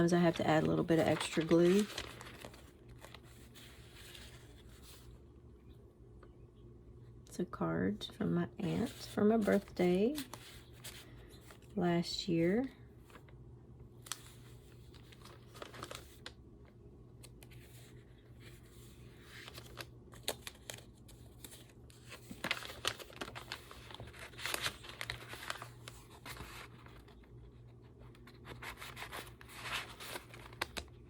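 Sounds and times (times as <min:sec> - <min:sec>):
paper rustling and crinkling: 0:00.0 - 0:05.2, 0:08.6 - 0:11.7, 0:14.0 - 0:16.4, 0:17.2 - 0:31.0
faint low hum: 0:00.0 - 0:31.0.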